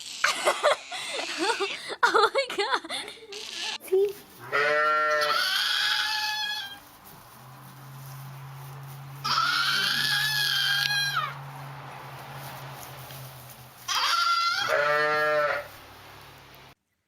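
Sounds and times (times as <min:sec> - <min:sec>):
animal bleating: 0:03.3 - 0:03.8, 0:04.4 - 0:06.8, 0:09.2 - 0:11.4, 0:13.9 - 0:15.8.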